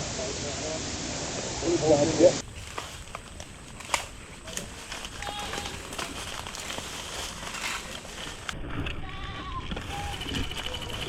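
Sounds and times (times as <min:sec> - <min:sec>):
rustling through undergrowth: 0:02.4 - 0:11.0.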